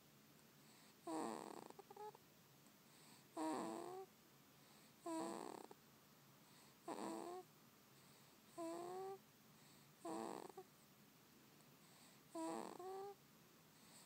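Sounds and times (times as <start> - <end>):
baby snoring: 0.7 - 2.2, 2.9 - 4.1, 4.8 - 5.8, 6.5 - 7.5, 8.5 - 10.7, 11.9 - 13.2.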